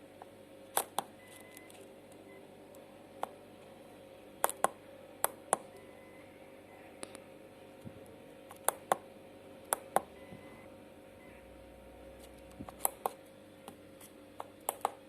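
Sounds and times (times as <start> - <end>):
faint hum and hiss: 0.0 - 15.0.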